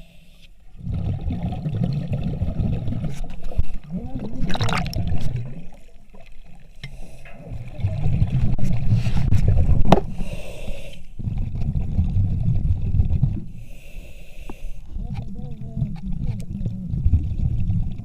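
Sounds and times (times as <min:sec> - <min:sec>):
bubbles gurgling underwater: 0:00.7 - 0:06.8, 0:07.4 - 0:10.0, 0:11.2 - 0:13.6, 0:14.9 - 0:18.0
air hiss: 0:10.1 - 0:11.1.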